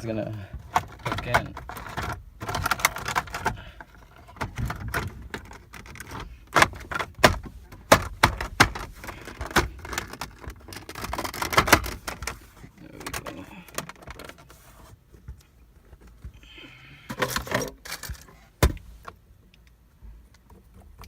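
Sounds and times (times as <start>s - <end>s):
plastic clicks and rattles: 0.7s - 12.4s, 13.0s - 14.5s.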